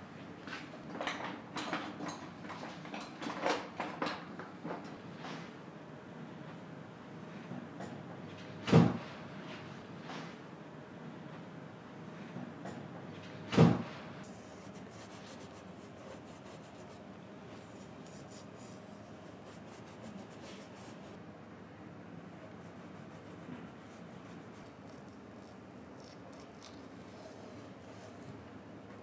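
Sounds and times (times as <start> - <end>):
scratching and rubbing on shoe sole: 14.4 - 21.2.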